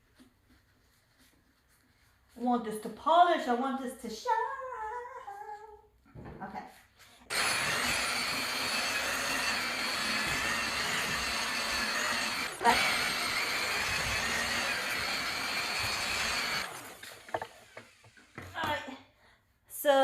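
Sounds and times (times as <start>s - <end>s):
electric buffer whining: 7.3s - 18.5s.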